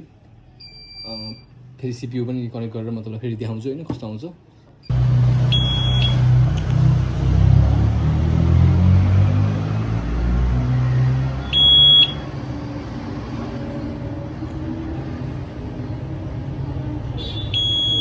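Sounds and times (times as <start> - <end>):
high-pitched electronic beep: 5.5 - 6.2, 11.5 - 12.2, 17.6 - 18.0.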